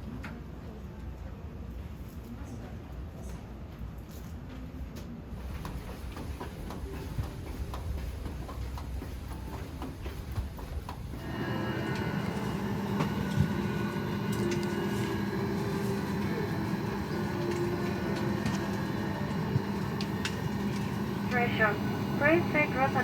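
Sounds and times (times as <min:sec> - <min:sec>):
airplane cabin hum: 0:05.3 - 0:23.0.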